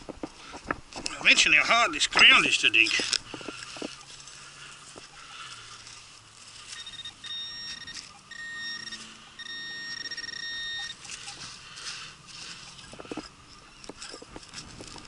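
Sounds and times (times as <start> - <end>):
metal detector high tone: 6.6 - 11.6.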